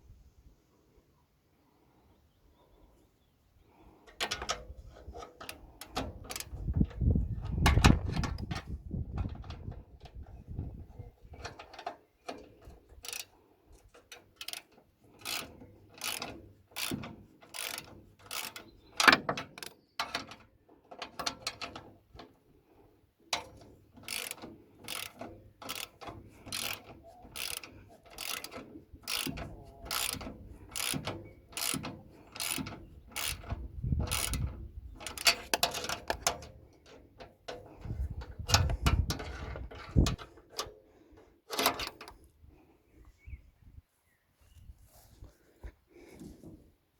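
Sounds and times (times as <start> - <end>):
ratchet wrench clicking: 5.5 - 6.6, 13.0 - 13.3, 14.4 - 19.8, 24.0 - 36.3.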